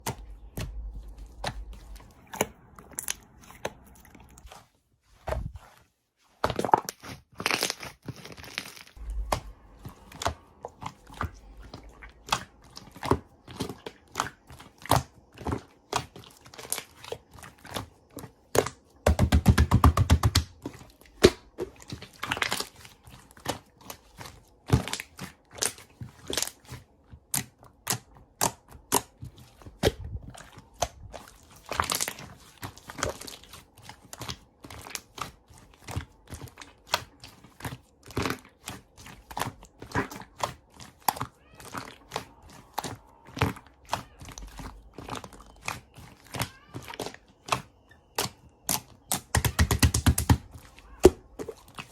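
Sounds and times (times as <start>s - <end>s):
slime clicking and popping: 39.4s - 51.9s.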